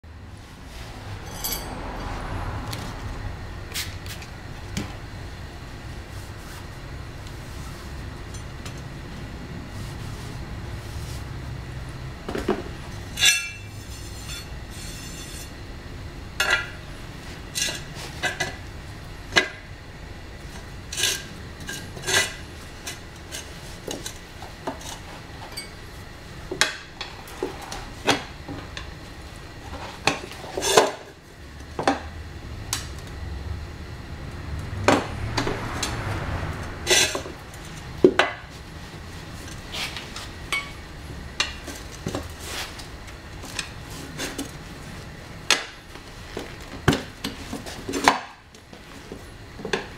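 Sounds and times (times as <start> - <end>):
low steady hum: 0.0 - 49.9
metal tools clinking on wheel rim: 1.2 - 1.9, 13.1 - 15.6, 25.4 - 25.8, 40.5 - 40.8.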